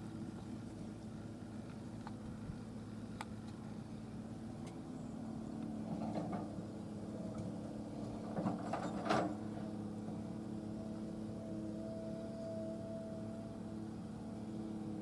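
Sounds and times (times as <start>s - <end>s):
diesel engine running: 0.0s - 15.0s
metal clanking and scraping: 8.2s - 9.4s.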